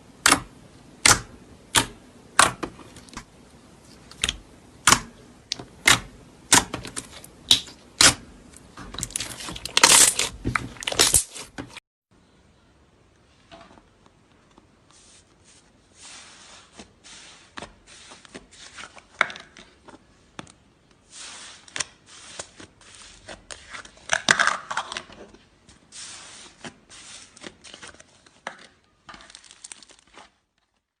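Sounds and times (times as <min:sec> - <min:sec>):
slime crackling and popping: 0:04.0 - 0:08.2, 0:09.0 - 0:11.5, 0:29.1 - 0:30.4.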